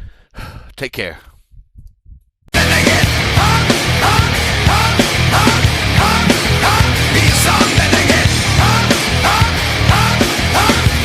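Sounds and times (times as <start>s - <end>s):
distorted fast rock music: 2.6s - 11.0s.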